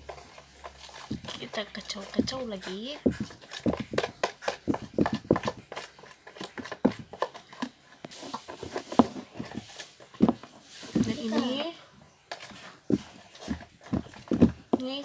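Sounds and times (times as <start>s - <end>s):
sticky clicks of stirred slime: 0.0s - 11.1s.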